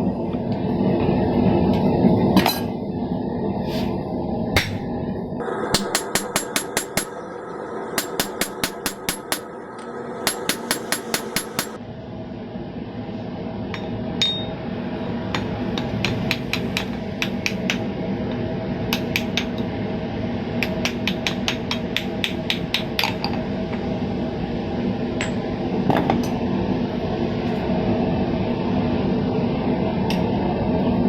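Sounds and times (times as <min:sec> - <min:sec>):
steady rushing background: 0:04.5 - 0:12.6
hammer striking steel on anvil: 0:04.6 - 0:05.0, 0:05.6 - 0:11.8, 0:13.8 - 0:14.5, 0:20.6 - 0:23.3.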